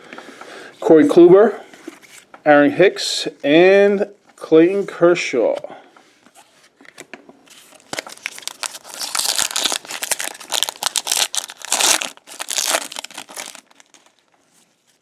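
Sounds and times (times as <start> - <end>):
plastic wrapper tearing and crinkling: 7.6 - 14.3.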